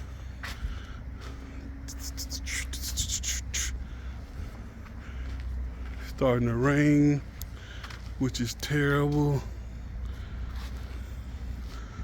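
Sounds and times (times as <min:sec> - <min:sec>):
truck engine idling: 0:00.0 - 0:12.0.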